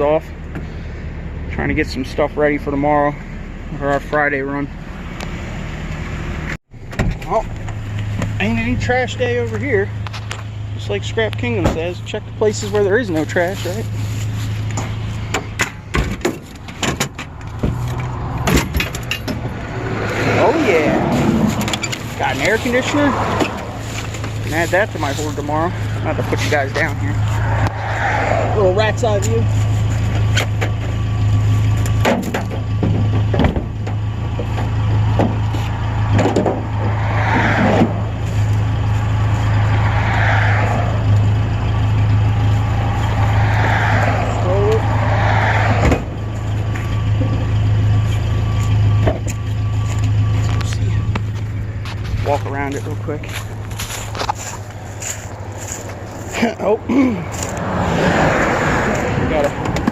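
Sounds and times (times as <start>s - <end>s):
vehicle engine humming: 0.0s - 59.9s
handling knocks and clunks: 13.2s - 19.6s, 29.6s - 36.9s, 59.5s - 59.9s.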